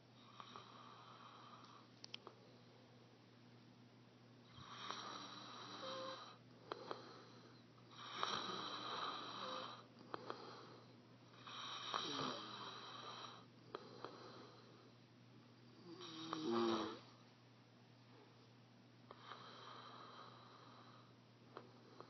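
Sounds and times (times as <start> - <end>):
person snoring: 4.5 - 10.8, 11.4 - 14.7, 15.8 - 17.0.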